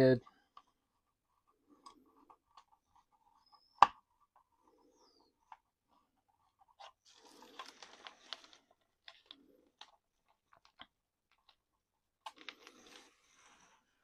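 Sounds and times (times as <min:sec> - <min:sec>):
plastic rattling and scraping: 0:06.2 - 0:14.0.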